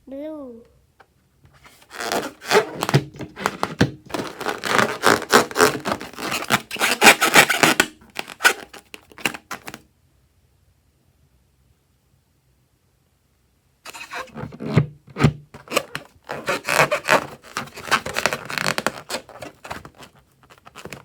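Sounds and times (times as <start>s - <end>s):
slime crackling and squishing: 2.0s - 9.7s.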